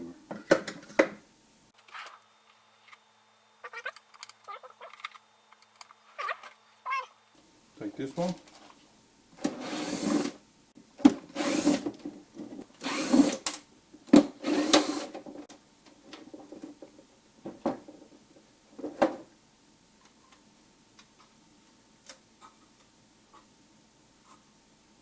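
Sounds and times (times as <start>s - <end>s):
plastic parts clicking and knocking: 3.9s - 6.6s.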